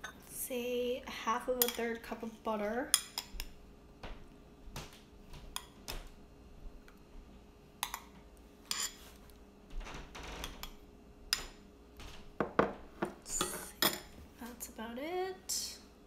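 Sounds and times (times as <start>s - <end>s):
utensils and dishes clinking: 13.2s - 14.1s.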